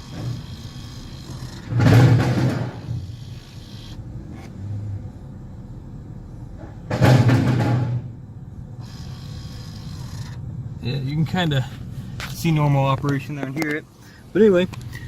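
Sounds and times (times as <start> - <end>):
blend door actuator running: 0.0 - 4.0, 8.8 - 10.4
car engine and blower hum: 0.0 - 15.0.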